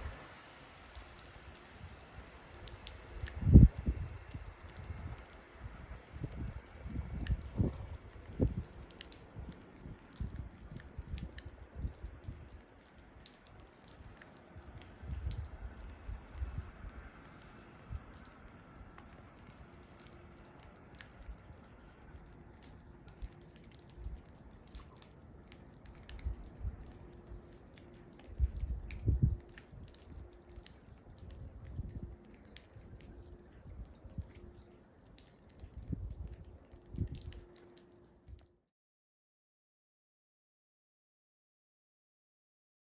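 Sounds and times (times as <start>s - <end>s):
wind gusting across microphone: 0.0s - 12.7s, 13.4s - 18.3s, 25.9s - 37.5s
faint ticks: 0.8s - 38.5s.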